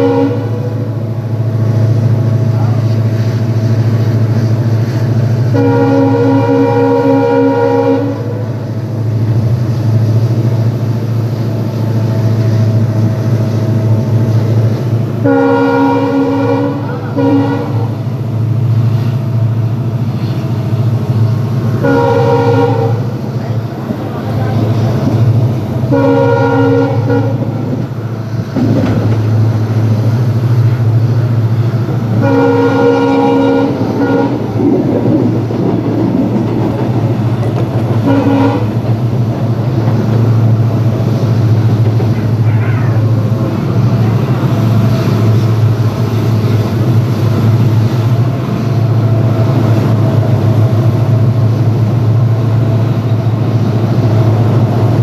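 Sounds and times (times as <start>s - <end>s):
locomotive horn blasts: 0.0s - 0.9s, 5.5s - 8.6s, 15.2s - 18.0s, 21.8s - 23.2s, 25.9s - 27.5s, 32.1s - 34.5s, 38.0s - 38.9s
rumble of moving train: 0.0s - 55.0s.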